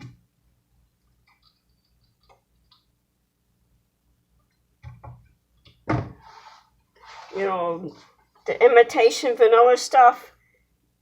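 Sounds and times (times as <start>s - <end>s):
loud thump: 5.9s - 6.3s.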